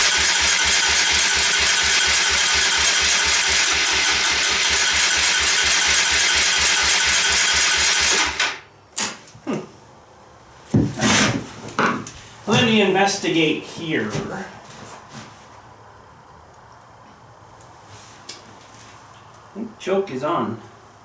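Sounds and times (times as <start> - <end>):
motorcycle engine cranking: 0.0 - 8.6.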